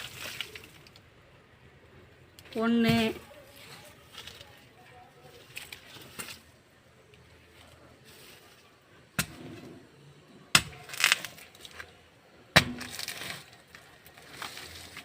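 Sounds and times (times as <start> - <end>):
rustle of loosened soil: 0.0 - 1.2, 3.2 - 9.9, 12.8 - 15.0
hoe striking earth: 9.2 - 9.7, 10.5 - 11.4, 12.5 - 14.5.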